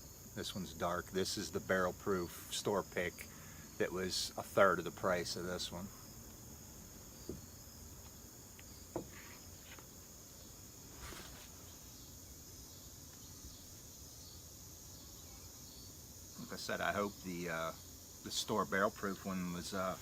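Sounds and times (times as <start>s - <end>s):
crickets chirping: 0.0s - 20.0s
faint short knocks: 7.2s - 7.5s, 8.9s - 9.8s.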